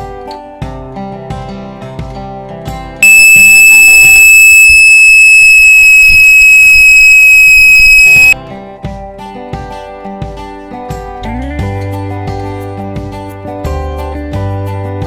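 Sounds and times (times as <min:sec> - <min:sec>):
high-pitched air horn blare: 0:03.0 - 0:08.4.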